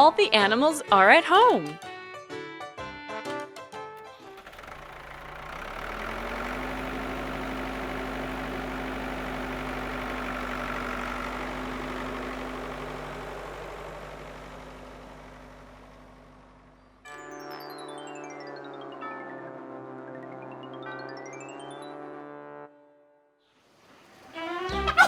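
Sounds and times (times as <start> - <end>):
music: 0.0 - 5.0, 17.1 - 23.5, 24.3 - 25.0
tractor engine running: 4.0 - 17.1.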